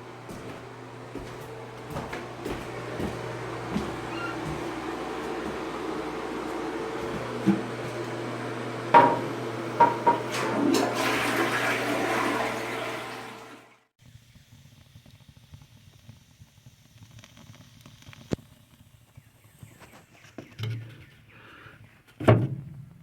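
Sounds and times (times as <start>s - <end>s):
steady low hum: 0.0s - 10.1s
sharp knocks: 9.0s - 10.2s
rushing water: 9.9s - 13.7s.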